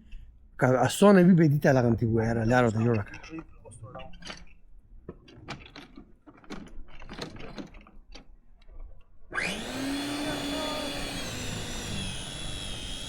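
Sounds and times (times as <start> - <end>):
motor humming: 9.3 - 13.0.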